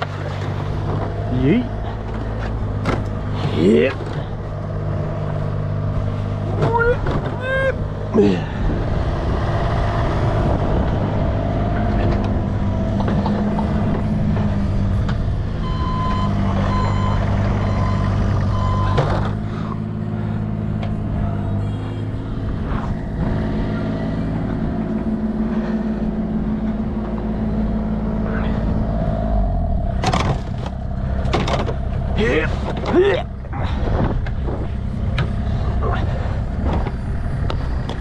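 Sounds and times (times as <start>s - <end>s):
large engine running: 0.0s - 38.0s
reversing alarm beeping: 15.6s - 19.1s.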